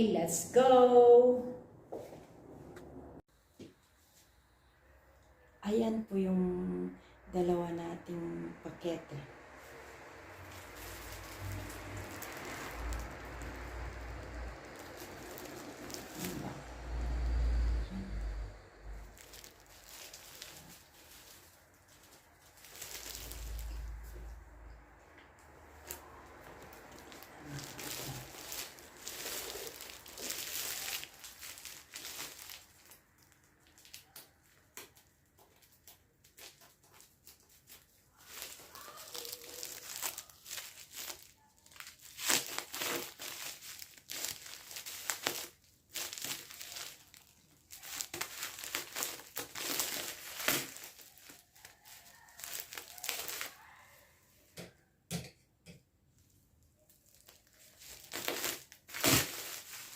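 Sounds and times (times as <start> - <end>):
wrapping crinkling and tearing: 9.0 - 24.5, 25.3 - 54.0, 56.2 - 59.9.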